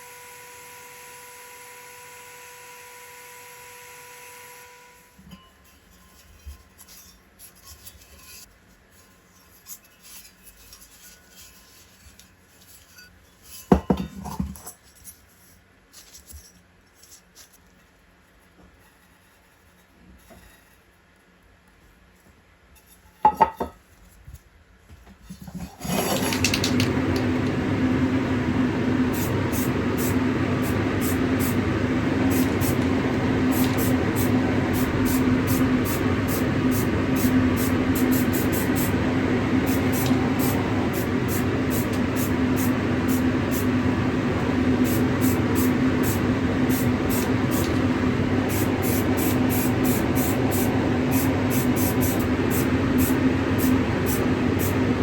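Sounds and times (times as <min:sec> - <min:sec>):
power tool running: 0:00.0 - 0:05.2, 0:25.8 - 0:55.0.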